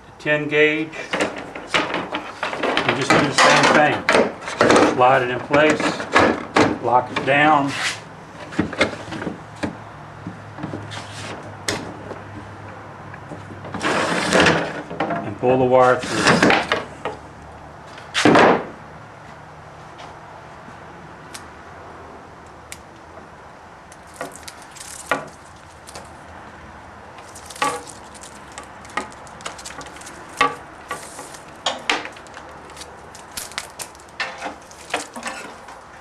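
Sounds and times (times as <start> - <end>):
wire pulled through wire stripper: 23.9 - 26.2, 27.2 - 35.8.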